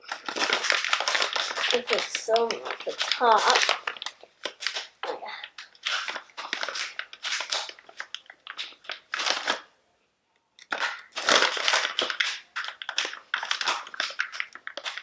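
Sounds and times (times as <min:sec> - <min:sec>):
plastic packaging crinkling: 0:00.0 - 0:09.7, 0:10.6 - 0:15.0.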